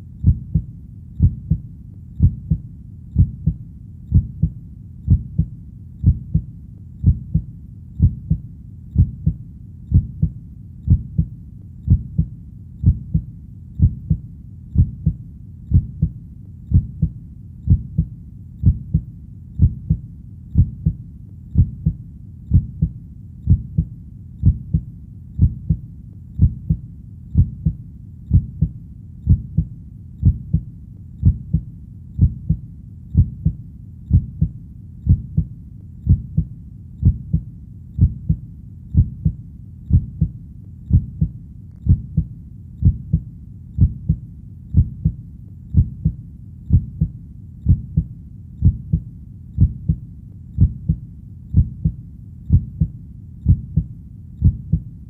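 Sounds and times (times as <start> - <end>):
heartbeat double thump: 0.2 - 1.6, 2.2 - 2.6, 3.2 - 8.4, 9.0 - 11.3, 11.9 - 14.2, 14.8 - 20.0, 21.6 - 25.8, 26.4 - 26.8, 27.4 - 31.6, 32.2 - 32.6, 33.2 - 35.5, 36.1 - 37.4, 38.0 - 38.4, 39.0 - 40.3, 40.9 - 43.2, 43.8 - 44.2, 44.8 - 45.2, 45.8 - 47.1, 47.7 - 49.0, 49.6 - 50.0, 50.6 - 54.9.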